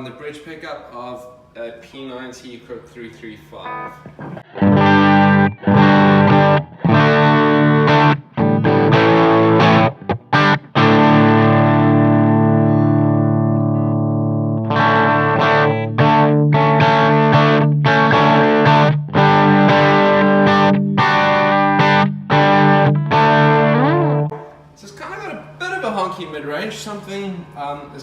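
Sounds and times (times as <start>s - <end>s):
overdriven electric guitar chords: 3.6s - 24.7s.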